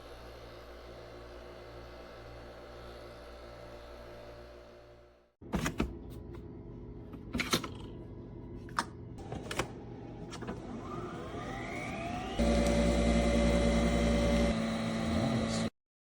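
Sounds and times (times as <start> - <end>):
electric motor whine: 10.6 - 15.7.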